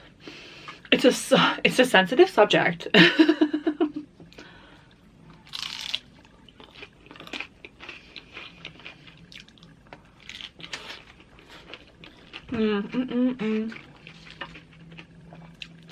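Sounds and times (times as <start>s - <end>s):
crunching and chewing chips: 5.3s - 13.0s, 13.6s - 15.9s.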